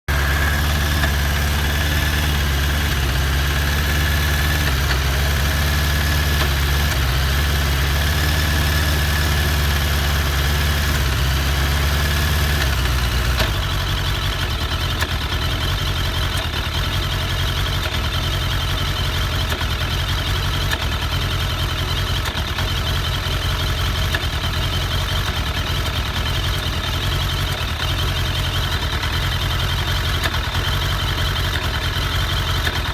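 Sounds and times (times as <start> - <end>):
motorcycle engine idling: 0.1 - 32.9
engine popping and hissing: 12.8 - 32.9.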